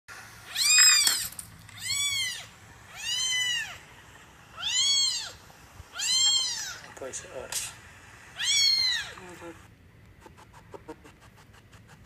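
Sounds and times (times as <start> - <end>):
cat meowing: 1.8 - 3.8, 4.6 - 6.8, 8.4 - 9.2.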